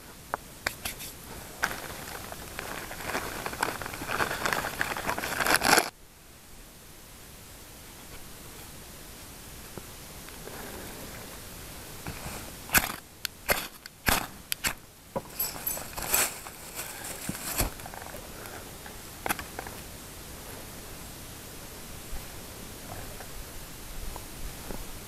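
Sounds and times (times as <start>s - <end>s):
faint steady hiss: 0.0s - 25.0s
dry sticks snapping: 12.7s - 18.5s.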